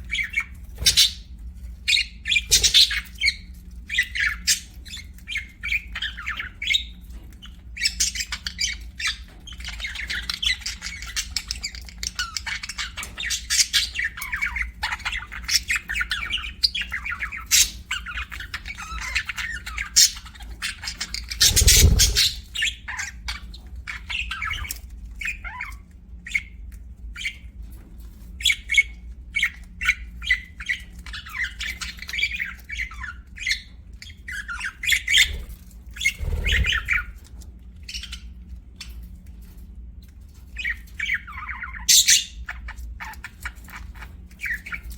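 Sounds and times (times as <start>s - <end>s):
budgerigars chirping: 0.1s - 1.3s, 1.9s - 6.9s, 7.8s - 23.4s, 29.4s - 37.1s.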